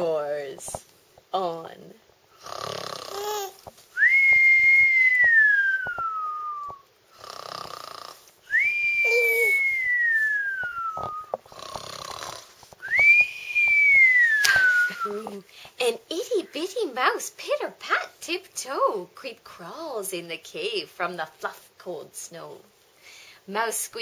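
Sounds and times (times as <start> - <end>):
cartoon-style snore: 2.4 - 3.3, 7.2 - 8.2, 11.5 - 12.5.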